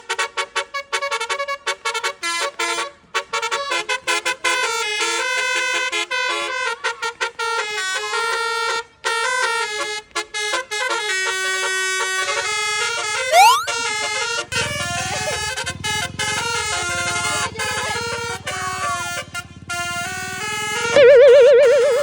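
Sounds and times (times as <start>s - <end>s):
bus musical horn tune: 14.6s - 22.0s.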